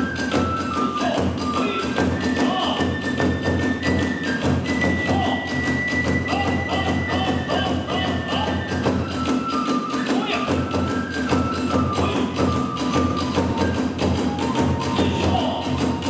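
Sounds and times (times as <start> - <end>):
bamboo flute long notes: 0.0 - 16.0
taiko drum beating fast: 10.5 - 16.0.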